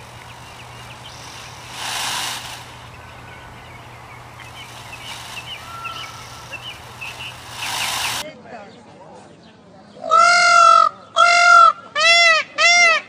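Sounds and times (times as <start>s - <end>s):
peacock calling: 0.0s - 8.2s
small birds chirping: 0.0s - 8.3s.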